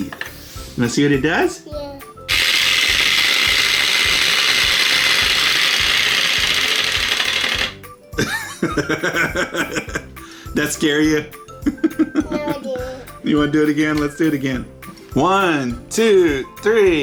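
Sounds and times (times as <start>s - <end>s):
wind-up chatter teeth clattering: 2.3s - 7.8s.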